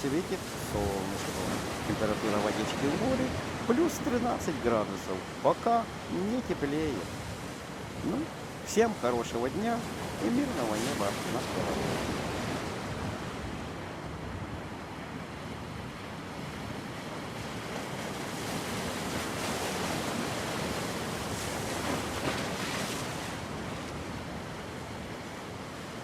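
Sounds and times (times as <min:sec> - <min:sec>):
waves washing onto shore: 0:00.0 - 0:26.0
wind on microphone: 0:06.9 - 0:08.5.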